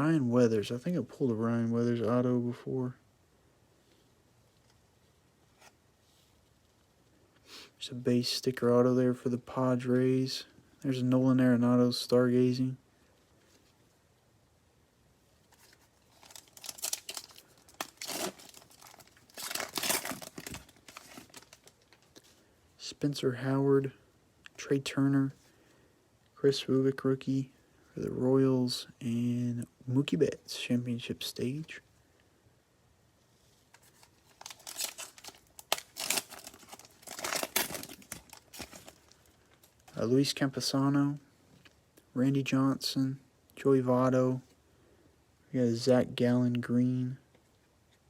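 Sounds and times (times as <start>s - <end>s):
card pack wrapper tearing and crinkling: 15.5s - 22.2s, 33.7s - 40.0s.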